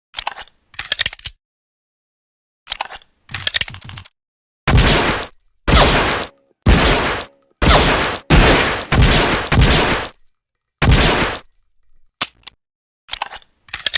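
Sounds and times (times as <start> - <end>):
pistol shots: 4.7 - 10.2, 10.8 - 11.5.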